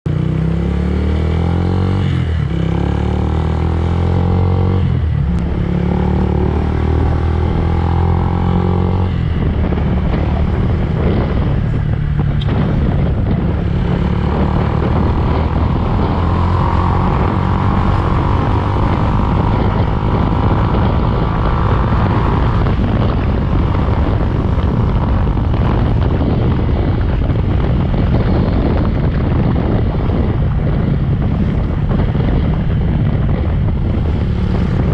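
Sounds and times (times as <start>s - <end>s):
motorcycle engine running: 0.1s - 34.9s.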